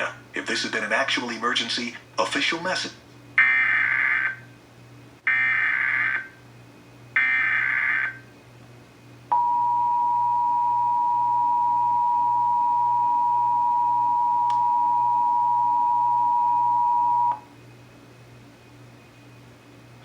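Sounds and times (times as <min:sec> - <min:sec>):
two-tone attention signal: 0:09.3 - 0:17.4.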